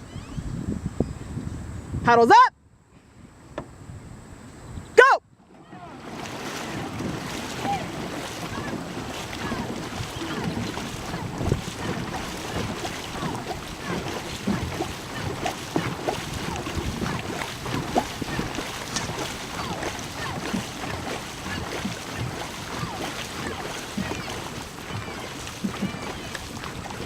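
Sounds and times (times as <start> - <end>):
wind buffeting microphone: 0.0 - 2.2, 5.5 - 27.0
water rushing along hull: 5.0 - 27.0
paddles splashing: 5.4 - 27.0.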